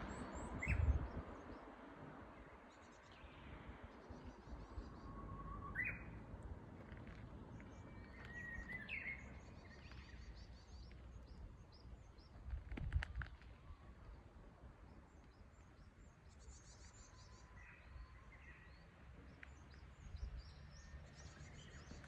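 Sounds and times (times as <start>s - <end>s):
bird singing whistled notes: 0.3s - 1.2s, 4.6s - 6.2s, 7.8s - 10.9s
small birds chirping: 6.8s - 22.0s.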